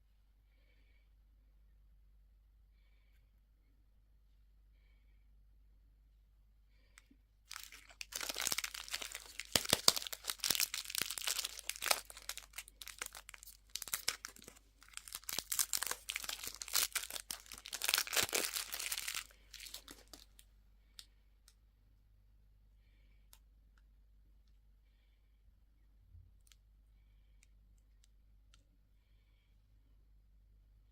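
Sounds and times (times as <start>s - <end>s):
candy wrapper crinkling: 7.5s - 20.4s.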